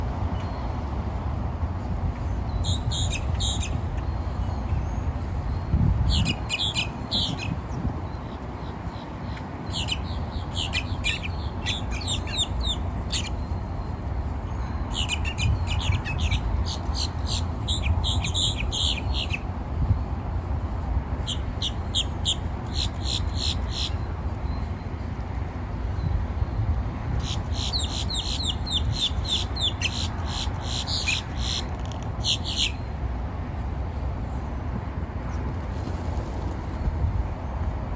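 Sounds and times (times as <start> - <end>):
grackle squeaking calls: 9.3 - 13.4, 21.3 - 24.0, 27.2 - 32.8.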